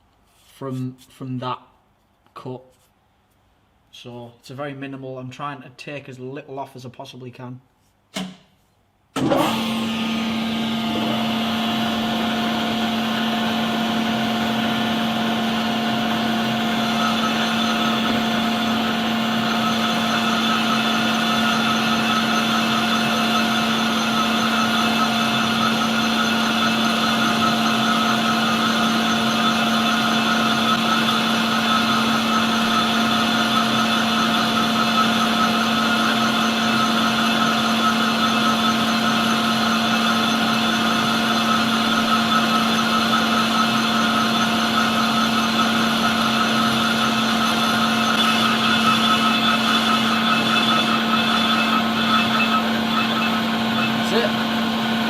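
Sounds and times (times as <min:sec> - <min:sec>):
metal lathe running: 0:09.4 - 0:55.0
high-pitched whine: 0:40.5 - 0:54.6.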